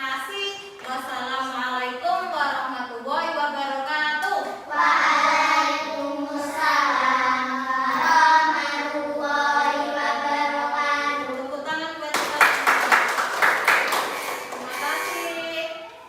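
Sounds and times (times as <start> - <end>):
children singing in unison: 4.7 - 11.4.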